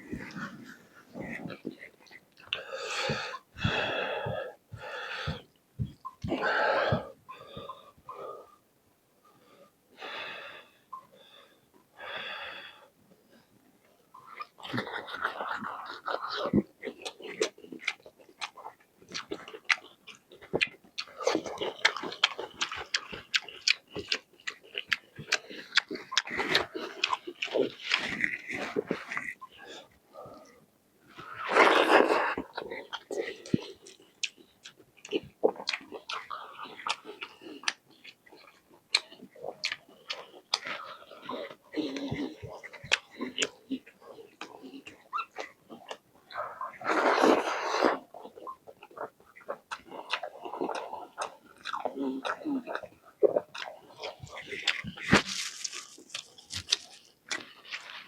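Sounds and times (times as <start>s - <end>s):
person chewing: 0.0s - 8.5s, 14.2s - 30.6s, 31.2s - 58.0s
noisy breaths: 2.5s - 8.6s.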